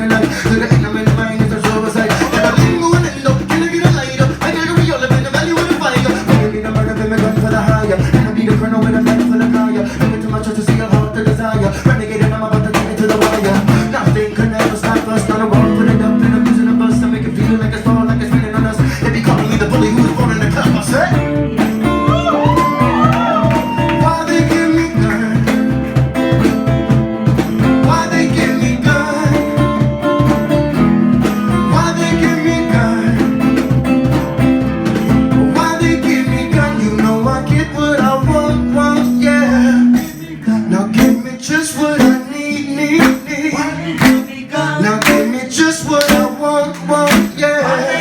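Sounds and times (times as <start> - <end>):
pulsing bass beat: 0.0 - 13.0, 15.2 - 40.3
guitar: 0.0 - 48.0
sharp percussive hits: 43.0 - 46.5, 47.1 - 47.5.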